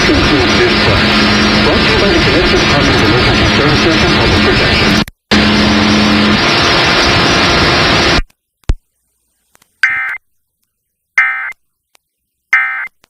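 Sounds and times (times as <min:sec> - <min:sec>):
radio static hiss: 0:00.0 - 0:08.2.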